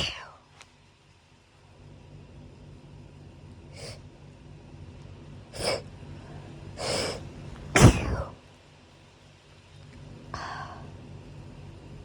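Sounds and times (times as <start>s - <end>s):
person sniffing through nose: 5.6s - 5.8s, 6.8s - 7.2s, 7.8s - 8.3s
loud sneeze: 7.8s - 8.4s.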